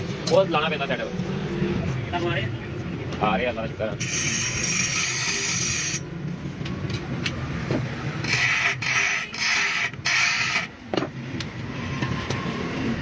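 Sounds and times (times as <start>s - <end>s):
hissing rasping bursts: 4.0s - 6.0s.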